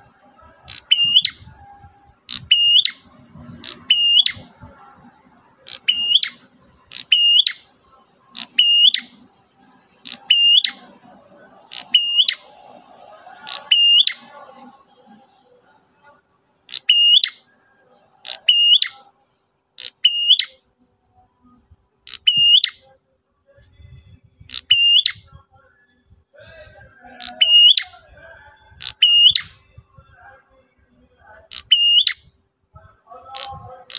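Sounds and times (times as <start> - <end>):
bird whistled calls: 0.7 - 1.6, 2.3 - 4.5, 5.7 - 7.6, 8.4 - 9.2, 10.0 - 10.8, 11.7 - 12.5, 13.4 - 14.3, 16.7 - 17.4, 18.2 - 19.1, 19.8 - 20.6, 22.1 - 22.8, 24.5 - 25.3, 27.2 - 28.0, 28.8 - 29.7, 31.5 - 32.3.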